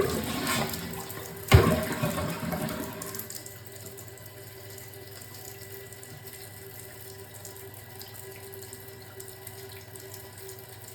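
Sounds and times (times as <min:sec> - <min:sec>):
toilet tank refilling: 0:00.0 - 0:10.9.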